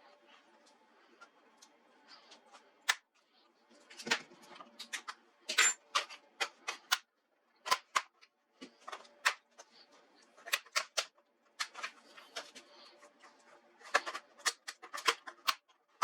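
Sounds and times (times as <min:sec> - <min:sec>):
clicks and taps of small parts: 0:04.0 - 0:08.3.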